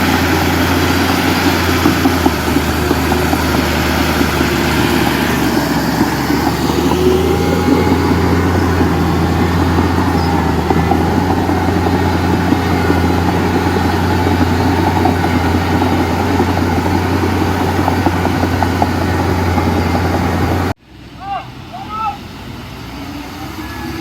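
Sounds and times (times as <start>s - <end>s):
fast irregular rattling clatter: 0.0s - 20.7s
heavy diesel engine droning: 0.0s - 24.0s.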